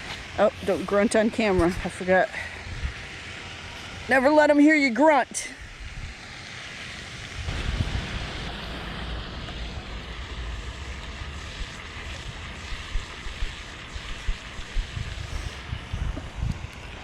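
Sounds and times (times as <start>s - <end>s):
wind buffeting microphone: 2.6s - 3.0s, 7.3s - 10.2s, 11.4s - 17.0s.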